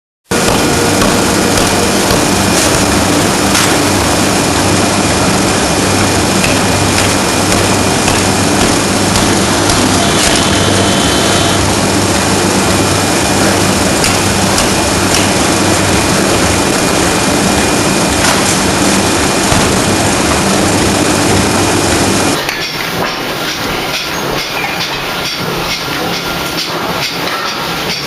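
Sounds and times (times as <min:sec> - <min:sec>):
sharp metallic knocks: 0:00.3 - 0:04.0, 0:06.4 - 0:11.6, 0:22.4 - 0:28.0
ring rolling machine drone: 0:00.3 - 0:28.0.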